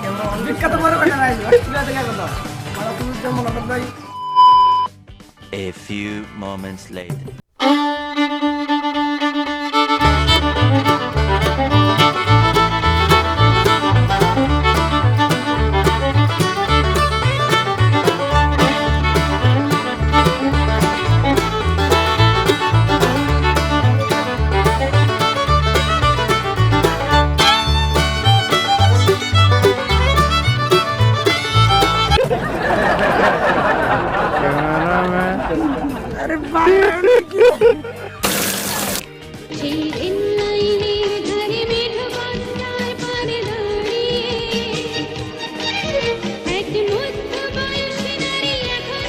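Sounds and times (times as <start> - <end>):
instrumental background music: 7.6 - 32.2
rhythmic bass line: 9.8 - 32.2.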